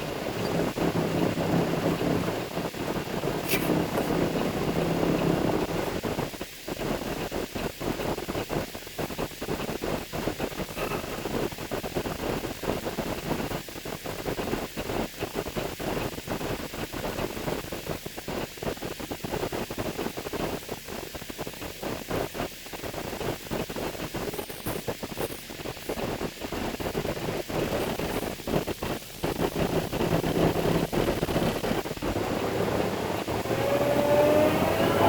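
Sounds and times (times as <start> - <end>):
low engine hum: 0.0 - 8.2, 25.1 - 35.0
truck engine and road rattle: 0.0 - 35.0.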